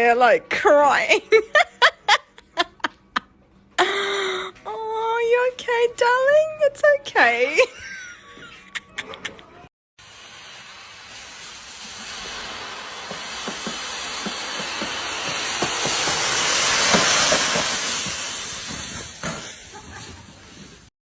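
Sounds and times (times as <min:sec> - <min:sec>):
rushing hiss: 0:10.0 - 0:20.9.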